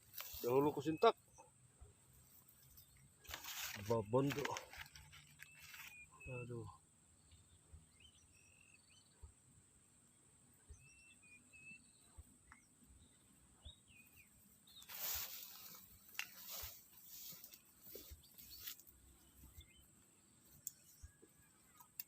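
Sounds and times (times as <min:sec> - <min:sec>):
bird chirps: 0:02.6 - 0:09.4, 0:10.6 - 0:15.8, 0:17.3 - 0:22.0.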